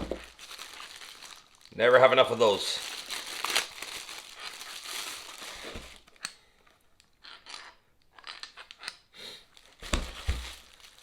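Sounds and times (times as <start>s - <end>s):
packaging crinkling and rustling: 0.0s - 6.2s, 9.5s - 11.0s.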